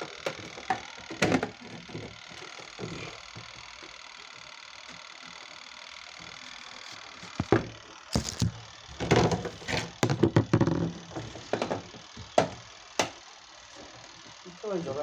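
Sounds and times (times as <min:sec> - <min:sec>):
parts and tools clattering: 0:00.0 - 0:03.2, 0:07.4 - 0:12.6.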